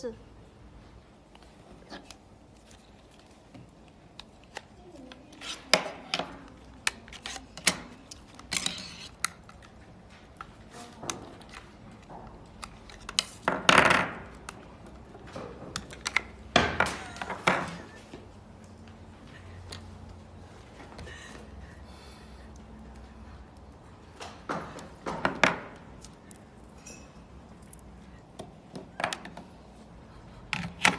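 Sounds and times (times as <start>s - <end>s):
noisy handling sounds: 1.3s - 21.8s.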